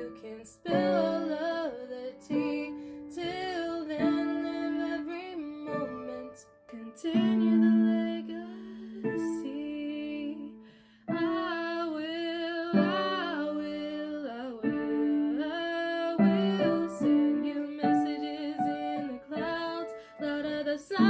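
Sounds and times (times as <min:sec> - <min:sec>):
piano accompaniment: 0:00.0 - 0:21.0.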